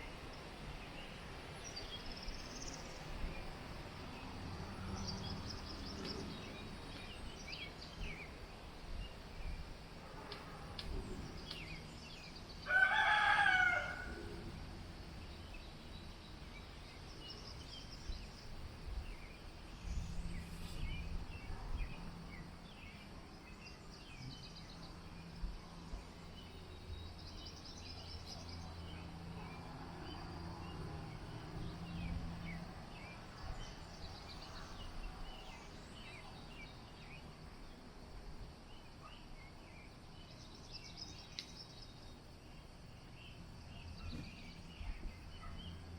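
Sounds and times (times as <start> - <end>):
small birds chirping: 0.0 - 9.8, 10.4 - 13.0, 13.8 - 45.9
rooster crowing: 12.6 - 14.4.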